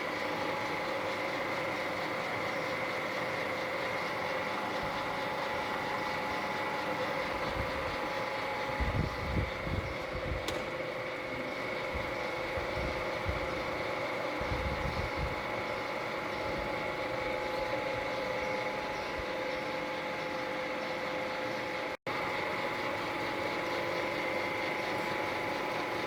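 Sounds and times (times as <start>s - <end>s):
lathe motor humming and whining: 0.0s - 26.0s
sharp click: 10.4s - 10.8s.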